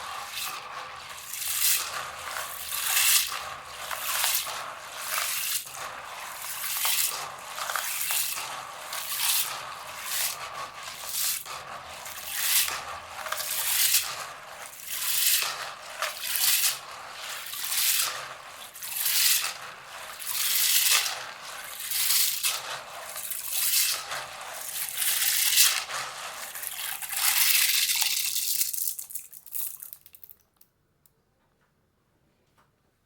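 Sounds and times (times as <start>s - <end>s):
beans swished in water: 0.0s - 30.4s.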